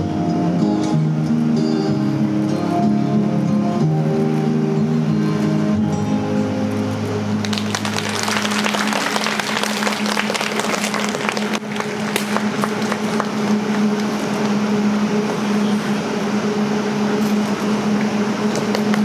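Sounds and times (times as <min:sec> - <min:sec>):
low hum: 0:00.0 - 0:19.0
audience applauding: 0:06.8 - 0:15.6.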